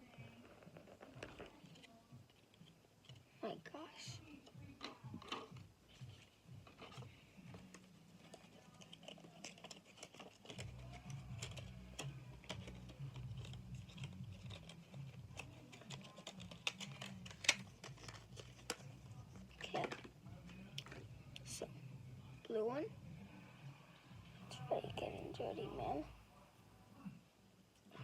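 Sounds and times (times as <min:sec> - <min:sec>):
hands handling small objects: 0:04.8 - 0:21.5.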